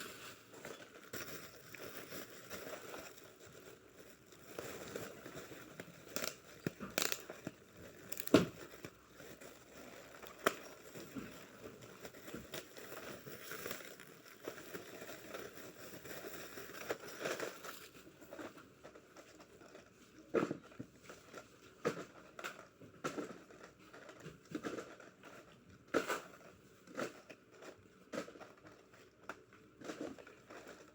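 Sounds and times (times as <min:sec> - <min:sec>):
plastic packaging crinkling: 0:00.0 - 0:18.6.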